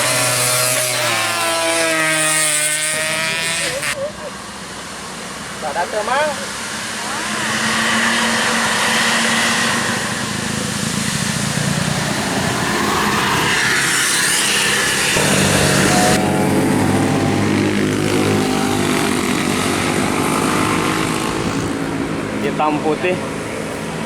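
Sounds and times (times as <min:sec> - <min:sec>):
road traffic noise: 0:00.0 - 0:24.0
bus diesel engine running: 0:10.2 - 0:24.0.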